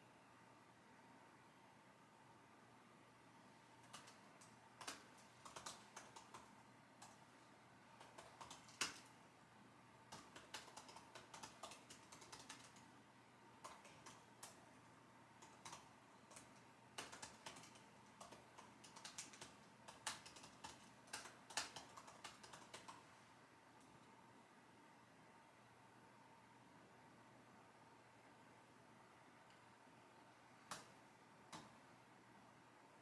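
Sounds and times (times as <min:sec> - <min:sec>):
computer keyboard typing: 0:03.8 - 0:07.2, 0:07.9 - 0:09.2, 0:10.1 - 0:12.9, 0:13.6 - 0:14.7, 0:15.3 - 0:23.2.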